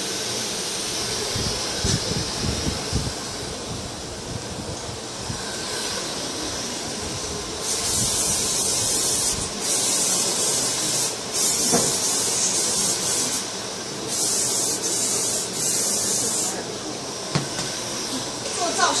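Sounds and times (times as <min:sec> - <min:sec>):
hair spray hissing bursts: 0:00.0 - 0:03.6, 0:05.3 - 0:16.8
steady air noise: 0:00.0 - 0:19.0.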